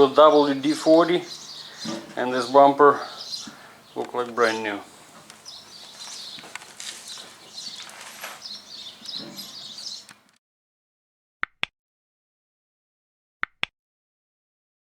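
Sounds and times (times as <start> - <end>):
birds chirping: 0.0 - 10.2.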